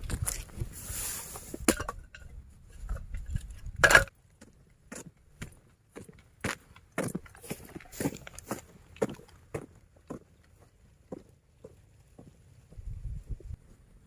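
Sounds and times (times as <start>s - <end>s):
clinks and knocks of small objects: 1.6s - 4.2s.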